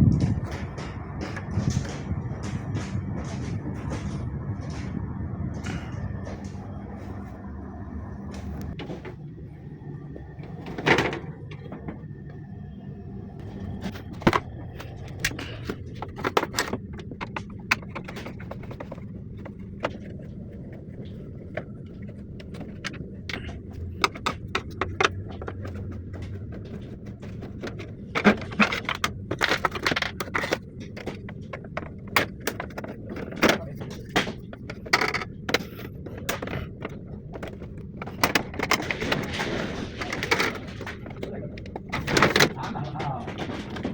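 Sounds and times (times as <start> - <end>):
steady low hum: 0.0 - 43.9
clicks and scrapes of parts: 13.4 - 43.9.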